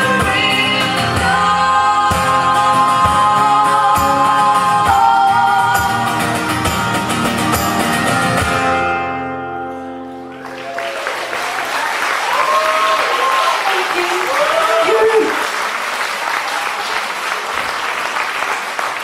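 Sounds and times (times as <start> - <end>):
strummed acoustic guitar: 0.0 - 10.4
audience applause: 10.1 - 19.0.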